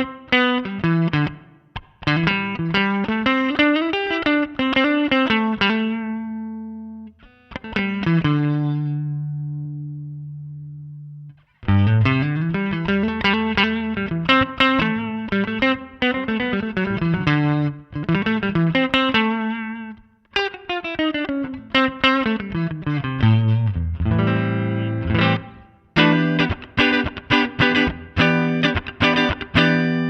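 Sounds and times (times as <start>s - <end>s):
electric guitar playing: 0.0s - 30.0s.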